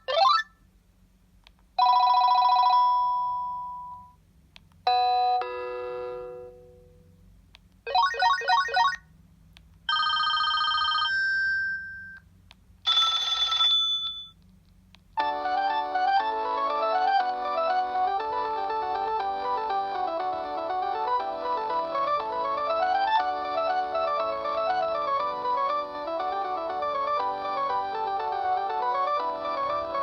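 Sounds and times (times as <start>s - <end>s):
electronic phone ringtones: 1.8s - 4.1s, 9.9s - 12.2s, 12.9s - 14.4s.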